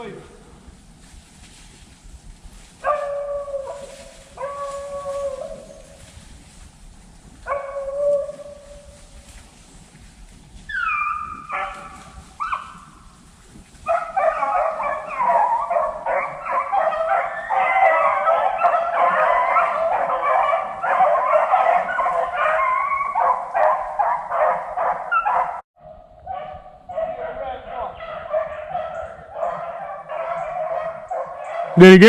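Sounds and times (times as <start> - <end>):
beagles baying and yipping: 2.8 - 6.4, 7.2 - 9.3, 10.6 - 13.0, 13.8 - 25.6, 26.2 - 31.8
dog howling: 2.9 - 5.8, 7.5 - 8.8, 10.7 - 12.8, 13.9 - 25.6.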